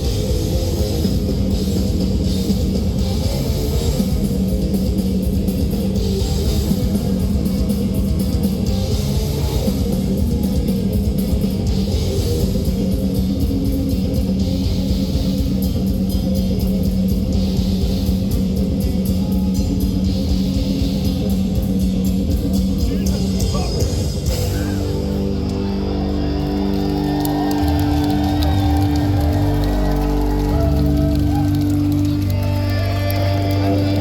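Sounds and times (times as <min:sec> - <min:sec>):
bass guitar: 0:00.0 - 0:34.0
fast dense drumming: 0:00.0 - 0:34.0.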